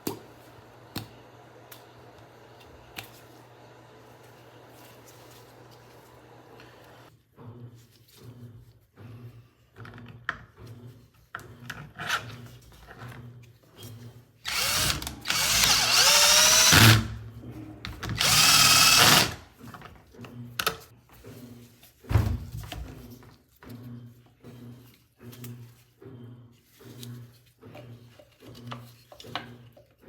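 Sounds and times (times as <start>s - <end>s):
small electric power tool motor: 14.5s - 17.2s, 18.2s - 19.4s.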